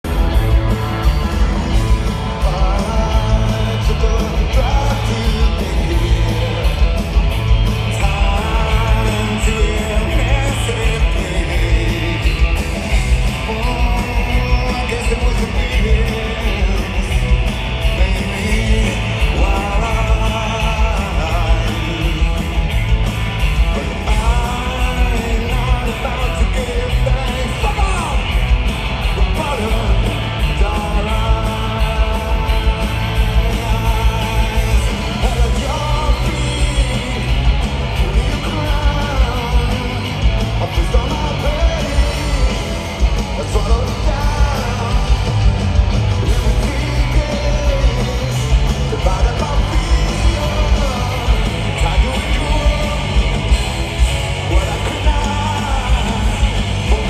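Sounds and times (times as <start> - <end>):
drum and bass beat: 0.0 - 57.0
electric guitars: 0.0 - 57.0
person singing: 0.3 - 7.0, 7.8 - 12.6, 29.1 - 45.5, 46.2 - 53.6, 54.4 - 57.0.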